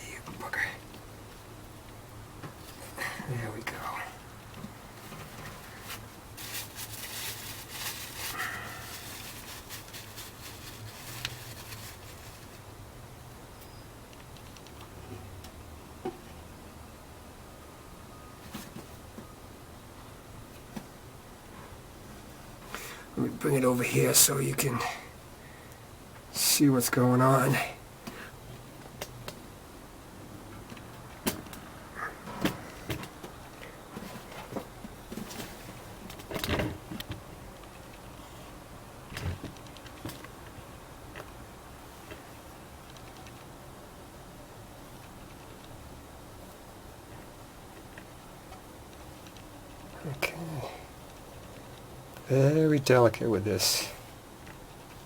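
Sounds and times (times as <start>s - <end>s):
low steady hum: 0.0s - 55.0s
rustling of parts being handled: 4.5s - 12.7s.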